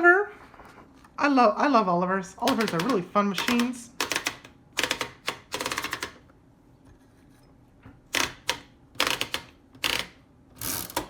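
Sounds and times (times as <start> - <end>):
typewriter clacking: 2.4 - 6.2, 8.1 - 10.2.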